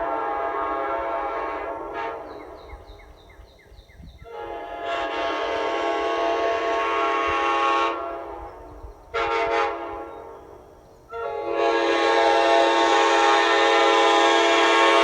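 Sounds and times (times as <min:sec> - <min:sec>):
locomotive horn chord: 0:00.0 - 0:02.8, 0:04.3 - 0:15.0.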